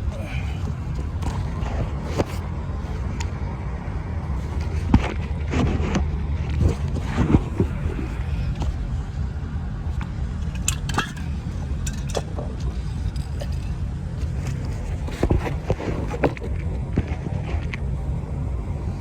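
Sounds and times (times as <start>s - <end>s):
steady low rumble: 0.0s - 19.0s
metal tools clinking and scraping: 10.4s - 15.2s.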